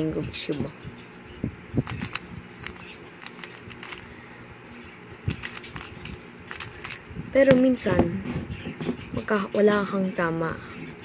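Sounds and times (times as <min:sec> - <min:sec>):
puzzle cube layers clicking: 0:01.8 - 0:04.1, 0:05.3 - 0:07.0.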